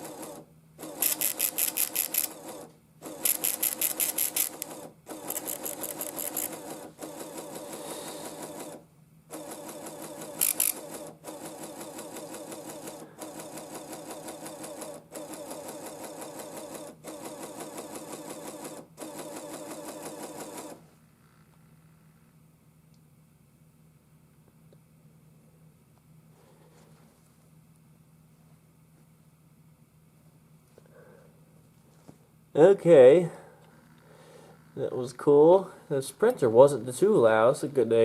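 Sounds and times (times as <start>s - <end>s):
printer rattling: 0.0s - 20.8s.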